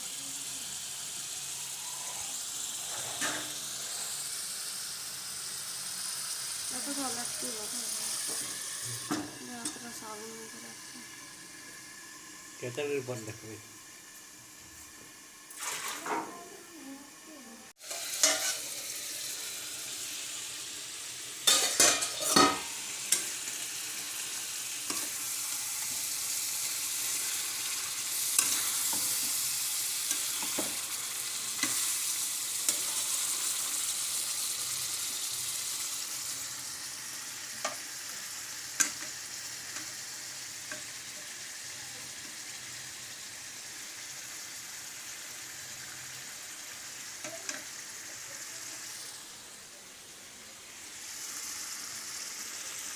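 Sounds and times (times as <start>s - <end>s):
food sizzling in a pan: 0.0s - 52.9s
spoon scraping and knocking pan: 17.9s - 18.6s, 21.4s - 23.3s, 30.2s - 30.8s.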